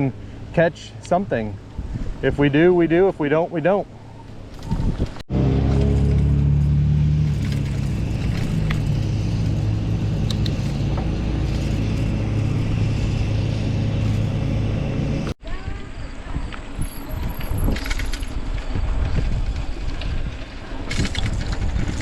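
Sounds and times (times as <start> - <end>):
engine running with low hum: 3.9 - 15.4.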